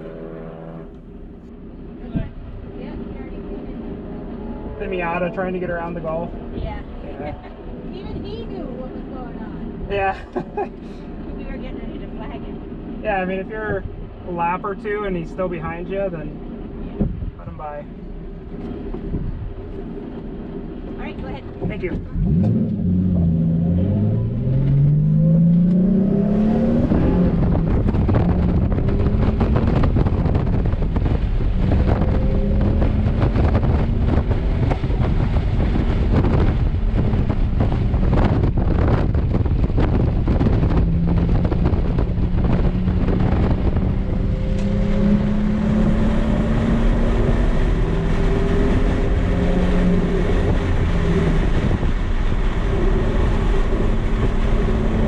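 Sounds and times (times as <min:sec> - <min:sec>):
car engine revving: 0:00.0 - 0:55.0
rushing wind noise: 0:16.1 - 0:55.0.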